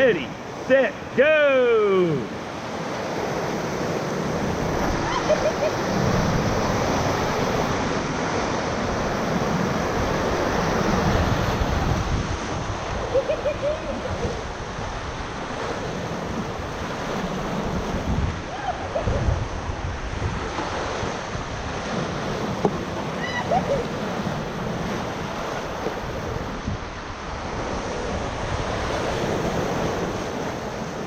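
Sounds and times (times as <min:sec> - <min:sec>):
wind buffeting microphone: 0:03.6 - 0:31.0
whitewater rapids rushing: 0:03.8 - 0:19.9, 0:21.2 - 0:26.6.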